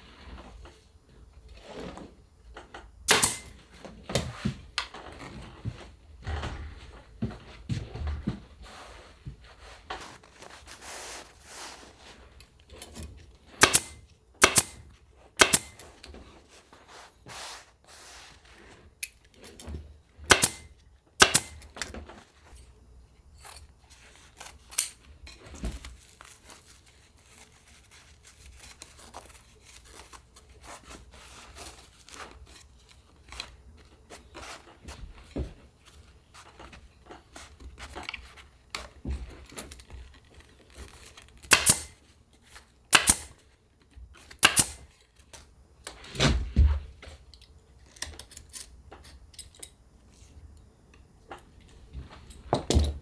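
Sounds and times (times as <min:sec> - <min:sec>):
staple gun shots: 0:03.1 - 0:03.6, 0:13.6 - 0:14.8, 0:15.4 - 0:15.8, 0:20.3 - 0:21.6, 0:41.5 - 0:41.9, 0:43.0 - 0:43.3, 0:44.4 - 0:44.8.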